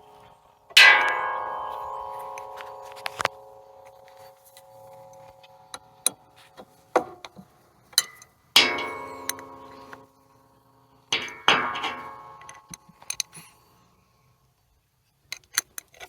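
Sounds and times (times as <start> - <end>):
hammer blows with ringing clang: 8.0 - 10.1.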